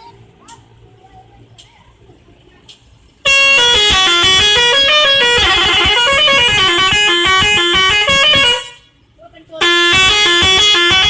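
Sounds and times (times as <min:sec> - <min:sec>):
multi-tone bus horn tune: 0:03.2 - 0:08.9, 0:09.6 - 0:11.0.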